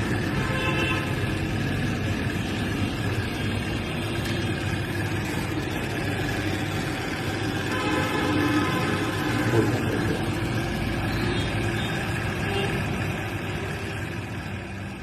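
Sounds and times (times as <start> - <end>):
mechanical drone with low rumble: 0.0 - 15.0.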